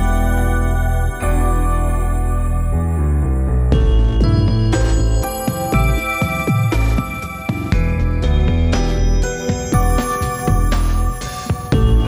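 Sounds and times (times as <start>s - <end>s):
instrumental music with steady bass: 0.0s - 12.0s.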